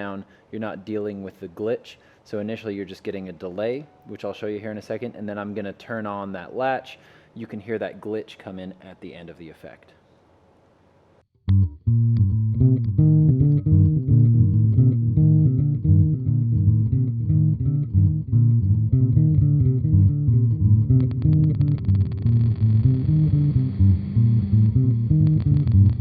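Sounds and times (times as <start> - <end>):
electric bass riff with delay: 11.5 - 26.0.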